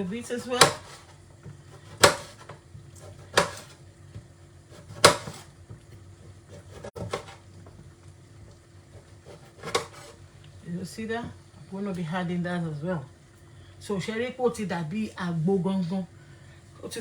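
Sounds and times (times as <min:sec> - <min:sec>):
knife chopping on cutting board: 0:00.4 - 0:01.1, 0:01.7 - 0:07.5, 0:08.9 - 0:10.2.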